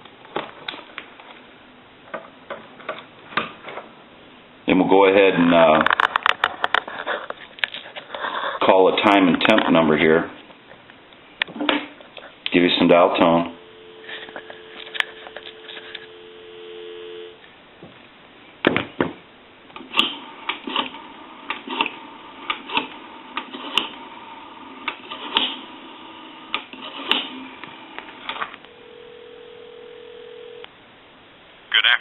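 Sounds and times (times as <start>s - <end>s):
ringback tone: 13.6s - 17.4s, 28.7s - 30.7s
telephone dial tone: 13.6s - 17.4s, 27.8s - 30.7s.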